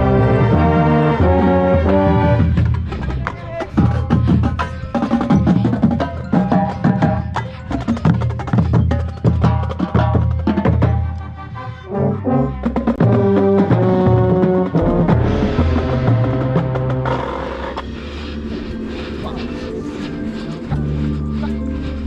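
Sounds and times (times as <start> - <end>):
brass chords: 0.0 - 4.4, 10.7 - 22.0
drum and block hits: 12.8 - 17.9.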